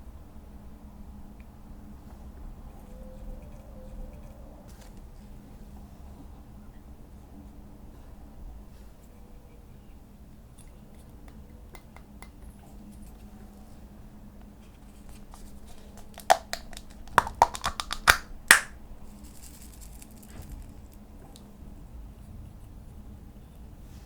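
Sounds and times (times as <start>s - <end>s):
slime pressed by hand: 16.0s - 18.7s
clicks and pops of trapped air: 16.0s - 18.8s.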